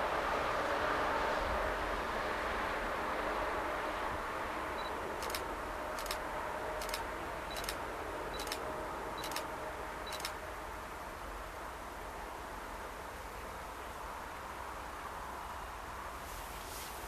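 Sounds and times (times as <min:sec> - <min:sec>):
camera focus beep: 0:04.8 - 0:05.4, 0:06.0 - 0:06.2, 0:06.8 - 0:07.8, 0:08.4 - 0:08.6, 0:09.2 - 0:09.4, 0:10.1 - 0:10.4
camera shutter click: 0:05.2 - 0:06.2, 0:06.8 - 0:07.8, 0:08.4 - 0:08.6, 0:09.2 - 0:09.5, 0:10.1 - 0:10.4.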